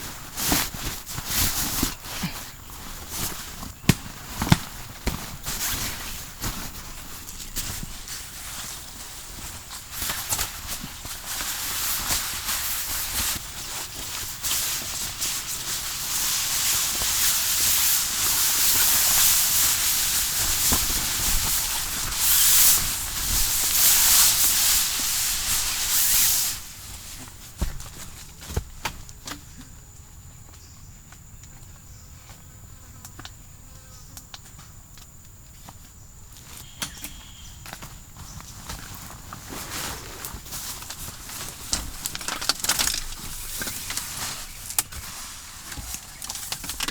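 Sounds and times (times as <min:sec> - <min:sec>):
insects buzzing in dense chorus: 0:00.1 - 0:46.9
high insect whine: 0:29.9 - 0:46.9.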